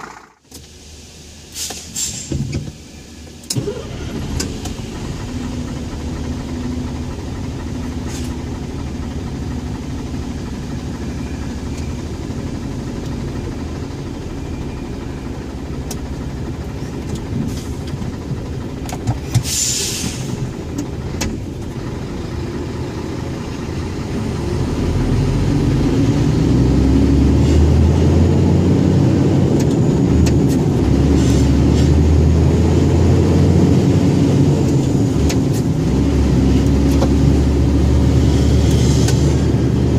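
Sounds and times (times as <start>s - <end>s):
diesel truck engine running: 0.0s - 39.9s
short hiss: 1.5s - 2.3s, 19.4s - 20.4s.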